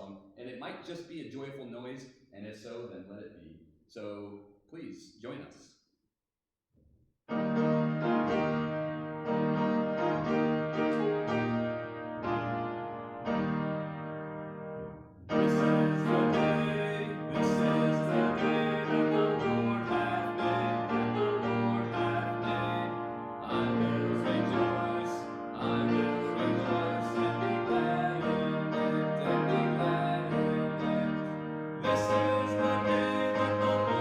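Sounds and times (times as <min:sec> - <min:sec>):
piano playing hymn chords: 0:07.3 - 0:34.0.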